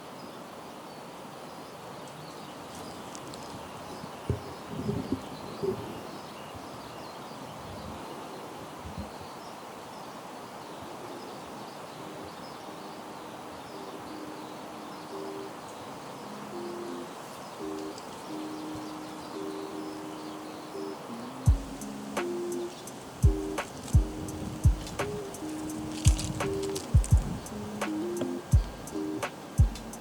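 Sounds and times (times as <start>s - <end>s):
small birds chirping: 0.2s - 30.0s
soft background music: 11.9s - 30.0s.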